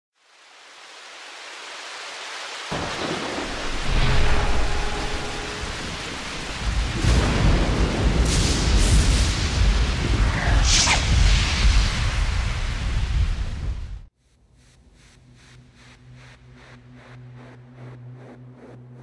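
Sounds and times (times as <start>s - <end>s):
rain-like hiss: 0.2s - 15.1s
rolling thunder rumbles: 2.7s - 14.1s.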